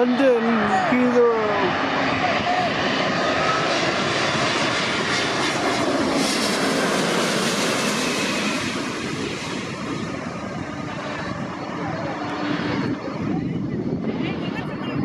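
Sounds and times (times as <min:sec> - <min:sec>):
high jet engine whine: 0:00.0 - 0:15.0
jet engine rush overhead: 0:00.0 - 0:15.0.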